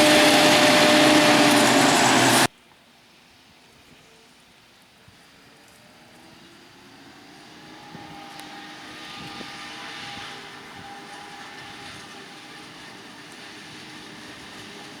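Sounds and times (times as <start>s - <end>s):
diesel farm machinery whining: 0.0s - 2.5s, 7.4s - 15.0s.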